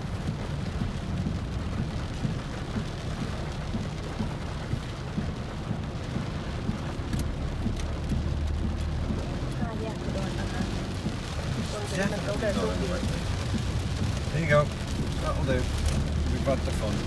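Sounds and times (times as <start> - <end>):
heavy rain on car roof: 0.0 - 17.0
sharp taps: 0.2 - 17.0.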